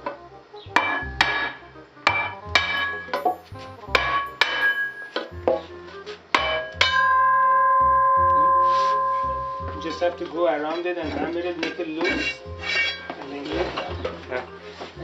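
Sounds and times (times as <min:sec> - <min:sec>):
hammer striking metal wheel: 0:00.8 - 0:05.6, 0:06.4 - 0:10.1, 0:11.6 - 0:13.2
metal wheel ringing: 0:00.8 - 0:05.6, 0:06.4 - 0:11.0, 0:11.7 - 0:13.2.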